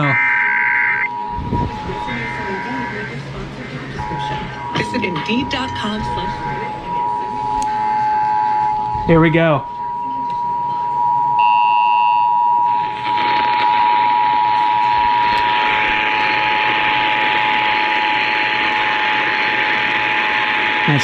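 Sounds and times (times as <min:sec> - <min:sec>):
two-tone attention signal: 0:00.0 - 0:16.6.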